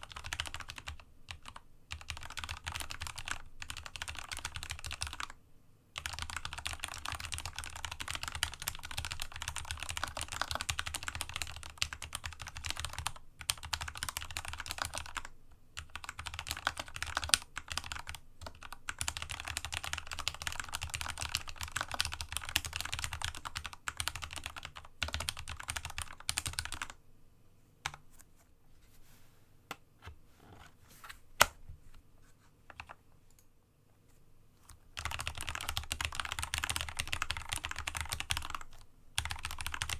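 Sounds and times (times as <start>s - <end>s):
rapid mechanical keyboard typing: 0.0s - 5.4s, 6.0s - 27.0s, 35.0s - 39.9s.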